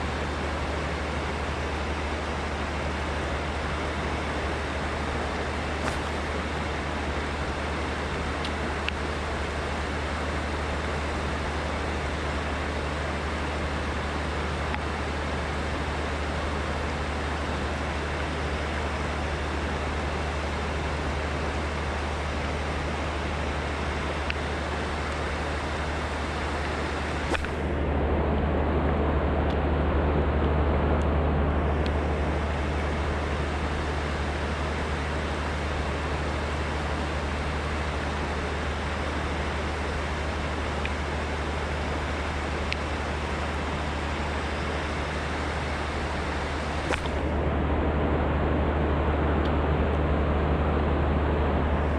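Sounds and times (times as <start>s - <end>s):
click: 5.8s - 6.2s, 26.6s - 27.6s, 46.8s - 47.4s.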